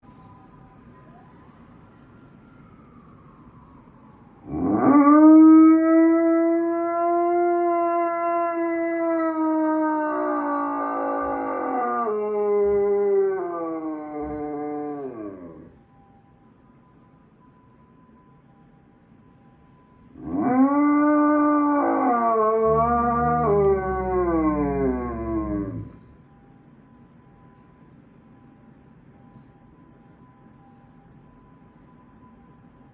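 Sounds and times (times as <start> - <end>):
dog howling: 4.4 - 15.7, 20.2 - 26.0.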